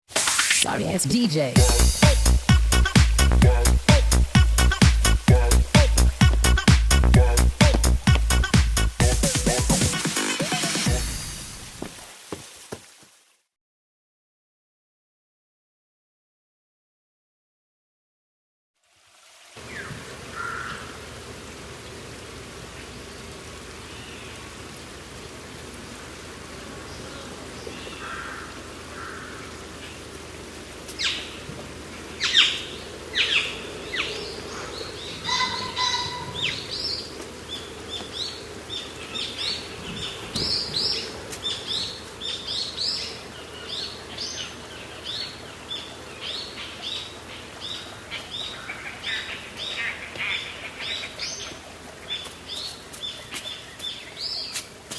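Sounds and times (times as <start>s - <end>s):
steady low rush: 0.6s - 10.0s
small birds chirping: 0.8s - 10.0s, 22.2s - 54.9s.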